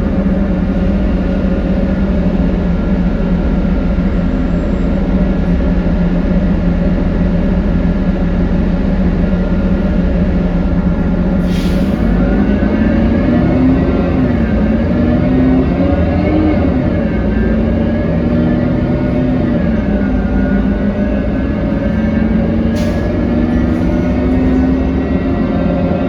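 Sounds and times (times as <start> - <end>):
bus engine droning: 0.0 - 26.0
air hissing: 11.4 - 12.2.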